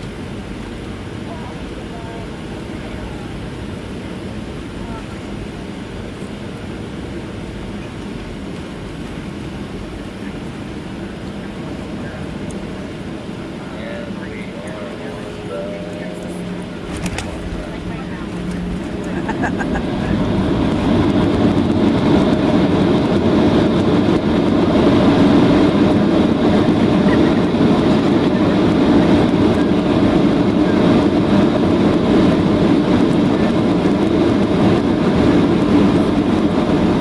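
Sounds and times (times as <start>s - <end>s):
aircraft rolling on runway: 0.0s - 37.0s
jet engines rumbling in cabin: 0.0s - 37.0s.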